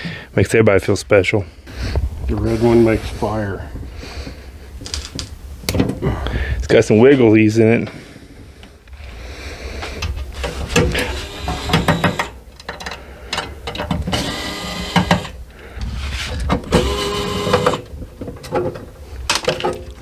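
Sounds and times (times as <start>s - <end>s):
small electric motor whirring: 10.4s - 12.4s, 14.1s - 15.4s, 16.7s - 17.8s
handling clicks and knocks: 18.0s - 20.0s.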